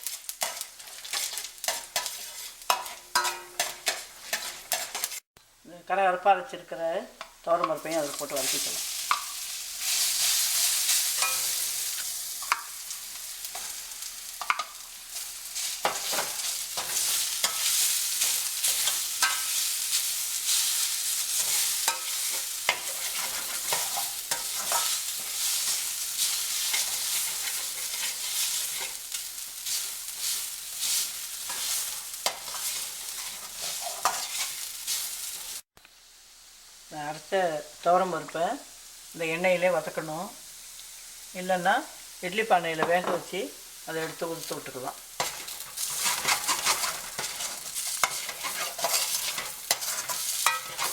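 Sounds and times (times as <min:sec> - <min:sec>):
spoon scraping and tapping pan: 0:00.0 - 0:05.2, 0:09.1 - 0:09.4, 0:11.2 - 0:12.8, 0:14.4 - 0:14.8, 0:15.8 - 0:19.6, 0:21.4 - 0:29.0, 0:31.5 - 0:34.6, 0:45.2 - 0:50.9
food sizzling in hot oil: 0:00.0 - 0:50.9.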